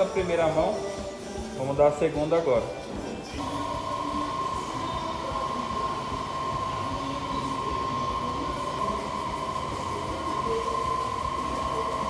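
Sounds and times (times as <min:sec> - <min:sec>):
paint sprayer whining: 0:03.3 - 0:12.0.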